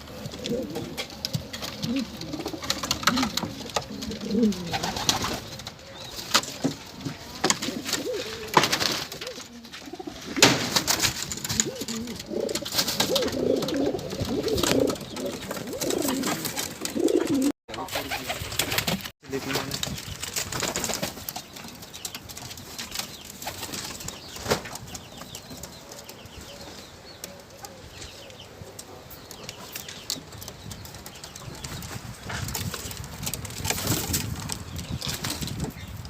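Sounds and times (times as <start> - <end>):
birds cooing: 0.0 - 18.3, 22.8 - 31.8
wings flapping: 0.0 - 25.3, 30.9 - 36.0
clicks and scratches of movement: 0.0 - 35.9.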